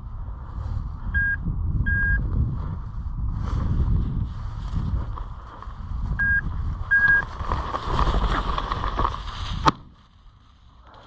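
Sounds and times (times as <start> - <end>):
short electronic beeps: 1.2 - 2.2, 6.2 - 7.2
walking through brush: 2.2 - 11.0.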